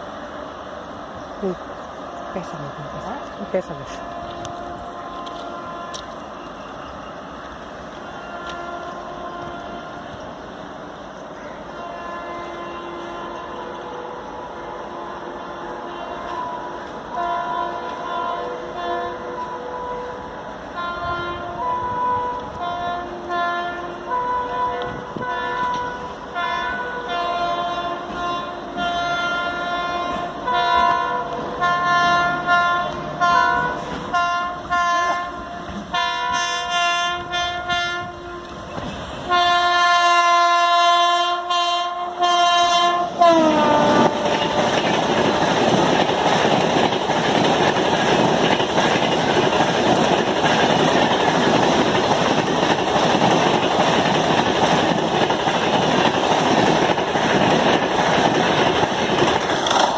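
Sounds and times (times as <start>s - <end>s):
locomotive horn blasts: 2.4s - 10.4s, 11.4s - 45.4s
train rushing and clattering past: 13.6s - 40.8s, 41.5s - 59.9s.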